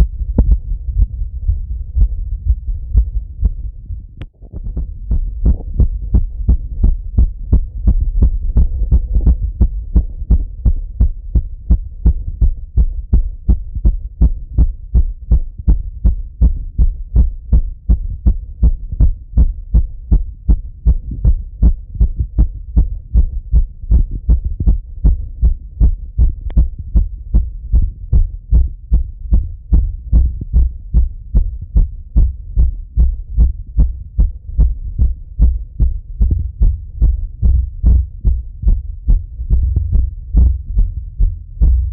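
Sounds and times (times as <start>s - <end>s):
heart beating through stethoscope: 0.0s - 41.9s.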